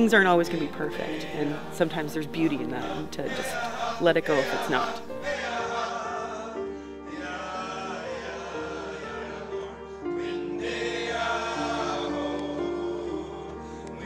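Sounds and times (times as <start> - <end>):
background music: 0.0 - 14.0
voices singing long held notes: 0.0 - 14.0.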